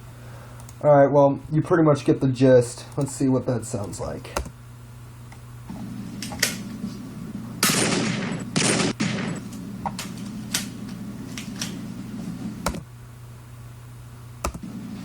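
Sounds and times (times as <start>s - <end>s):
low steady hum: 0.0s - 15.0s
faint sharp clicks: 0.6s - 0.8s
loud gunshots with echoing tail: 5.8s - 12.6s.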